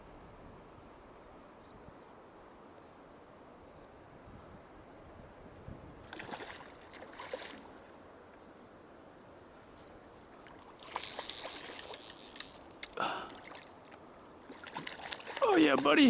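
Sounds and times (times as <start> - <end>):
splashing in river water: 6.0 - 7.9, 10.3 - 16.0
stream rushing: 10.3 - 16.0.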